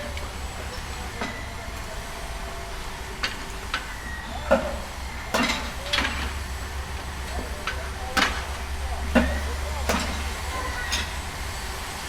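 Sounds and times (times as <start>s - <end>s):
knocks and clanks: 7.0s - 11.2s.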